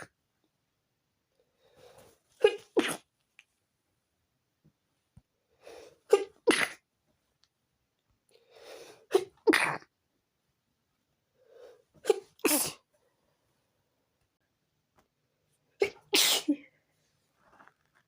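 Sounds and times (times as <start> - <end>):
woman sneezing: 2.4 - 3.0, 12.0 - 12.8, 15.8 - 16.7.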